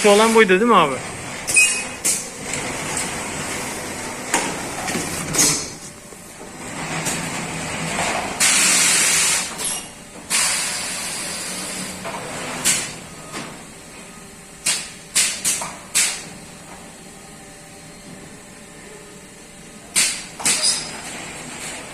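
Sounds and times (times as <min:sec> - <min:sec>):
compressed air hissing: 0:10.3 - 0:11.9.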